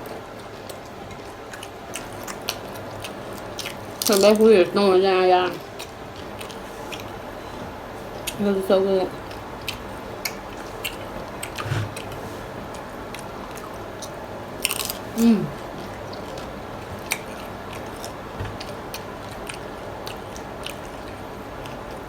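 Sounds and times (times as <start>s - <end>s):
crunchy food chewing: 0.4s - 4.5s, 5.5s - 7.4s, 9.2s - 22.0s
person humming: 15.2s - 15.6s.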